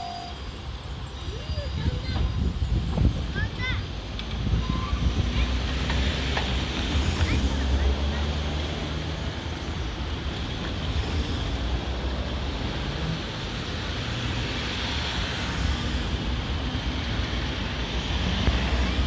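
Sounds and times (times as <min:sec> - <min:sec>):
wind buffeting microphone: 0:01.3 - 0:08.0.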